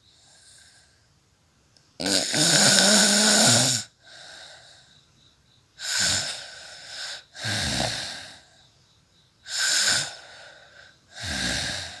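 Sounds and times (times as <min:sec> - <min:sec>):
woman snoring: 0:02.0 - 0:04.6, 0:05.8 - 0:08.4, 0:09.5 - 0:12.0.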